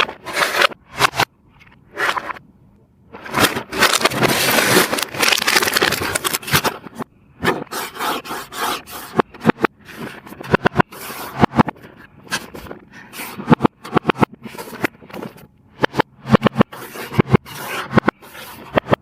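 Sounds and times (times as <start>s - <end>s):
packaging scraping and crackling: 3.2s - 7.0s.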